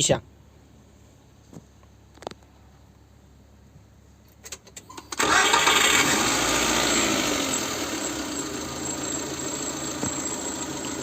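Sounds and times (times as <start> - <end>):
car engine starting and idling: 4.3 - 11.0.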